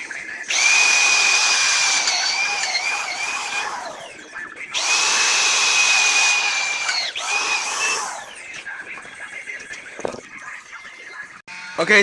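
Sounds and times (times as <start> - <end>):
electric drill whining: 0.5 - 4.2, 4.8 - 8.4.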